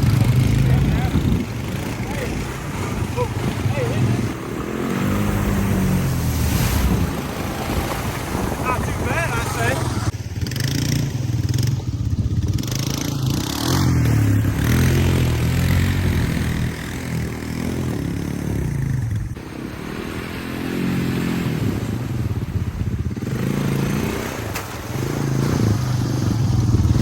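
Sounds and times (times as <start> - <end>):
atv engine revving: 0.0 - 27.0.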